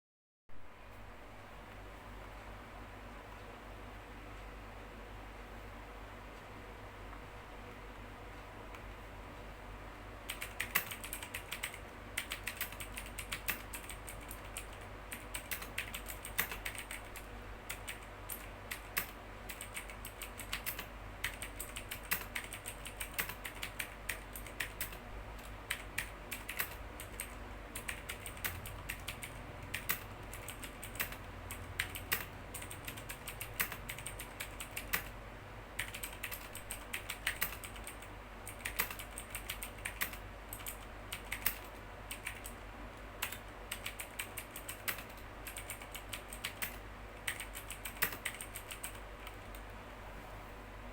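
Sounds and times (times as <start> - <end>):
mechanical keyboard typing: 10.2 - 35.2, 35.8 - 42.6, 43.2 - 49.7.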